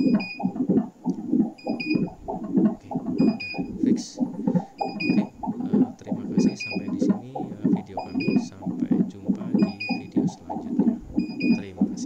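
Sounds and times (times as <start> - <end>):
short high beeps: 11.2 - 11.6.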